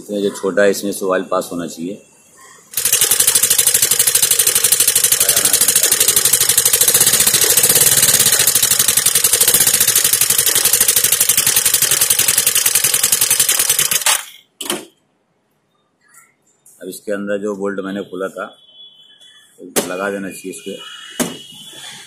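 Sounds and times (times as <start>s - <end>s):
scooter engine idling: 2.8s - 14.0s.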